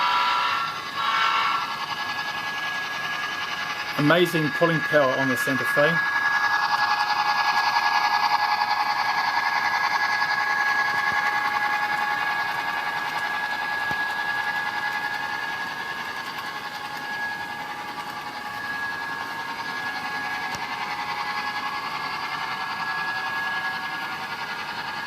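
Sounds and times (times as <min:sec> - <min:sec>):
model locomotive buzzing hum: 0:00.0 - 0:25.0.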